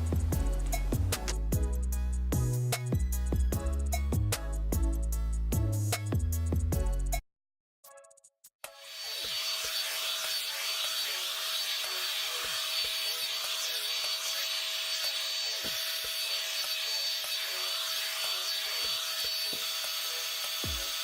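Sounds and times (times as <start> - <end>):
hair dryer brush running: 9.0 - 21.0.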